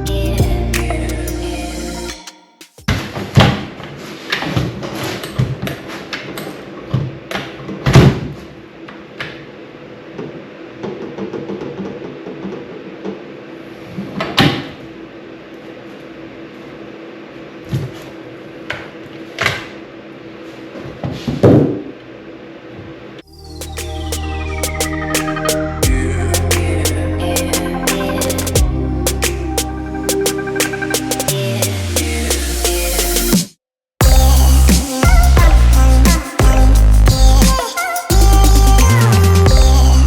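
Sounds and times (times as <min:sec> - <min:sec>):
steady low hum: 0:23.2 - 0:32.0.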